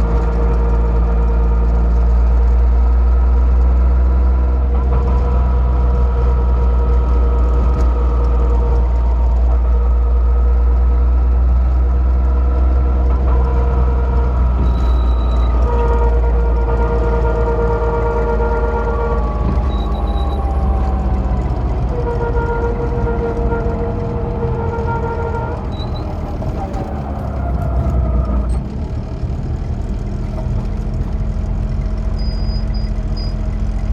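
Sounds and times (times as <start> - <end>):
low metallic wheel rumble: 0.0 - 33.9
falling tone: 12.8 - 29.2
squeal tone: 13.0 - 28.7, 32.0 - 33.6.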